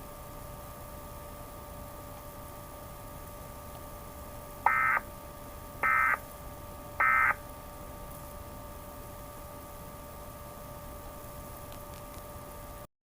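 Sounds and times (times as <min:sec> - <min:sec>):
faint steady hum: 0:00.0 - 0:12.9
raspy digital data tones: 0:04.7 - 0:05.0, 0:05.8 - 0:06.2, 0:07.0 - 0:07.4.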